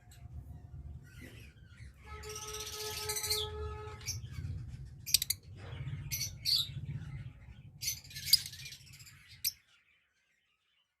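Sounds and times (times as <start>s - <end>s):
low steady rumble: 0.0s - 2.1s, 3.2s - 9.5s
lovebirds chirping: 1.0s - 11.0s.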